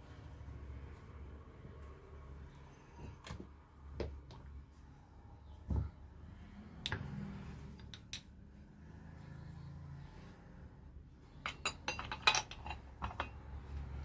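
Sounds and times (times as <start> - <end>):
metal tools knocking and clinking: 6.8 - 8.4, 11.4 - 13.5.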